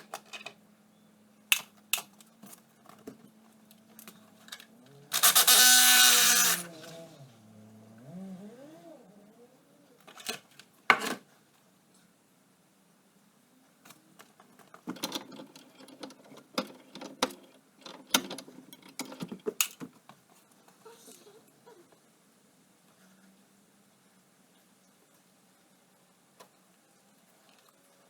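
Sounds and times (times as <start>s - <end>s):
tools and metal parts clinking: 0.0s - 0.6s.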